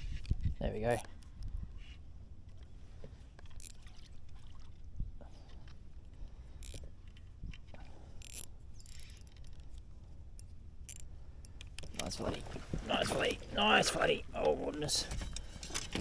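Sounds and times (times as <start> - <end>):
gear scraping and clicking: 3.4 - 4.0, 6.6 - 16.0.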